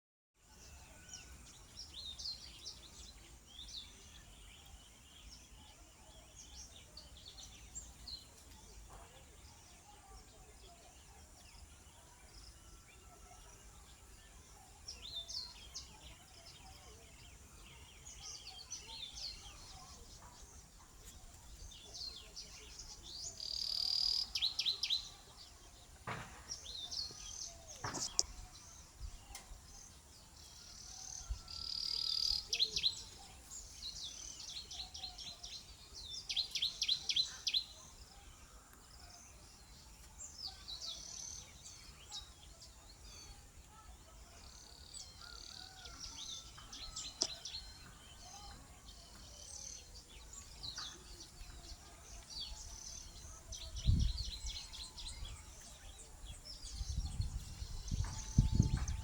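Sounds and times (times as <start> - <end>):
songbirds chirping and trilling: 0.4 - 59.0
sharp clicks: 27.8 - 28.4.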